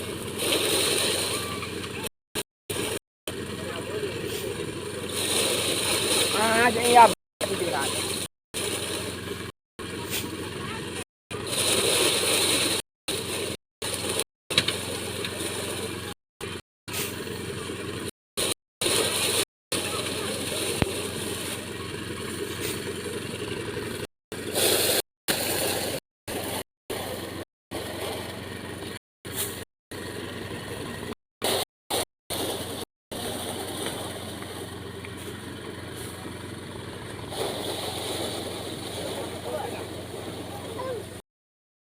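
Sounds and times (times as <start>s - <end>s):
threshing machine engine running: 0.0s - 40.7s
small engine humming: 32.4s - 41.2s.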